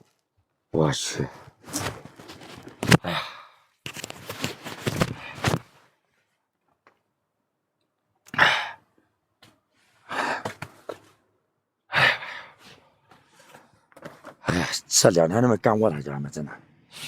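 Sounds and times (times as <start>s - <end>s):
man sighing: 3.0s - 3.6s.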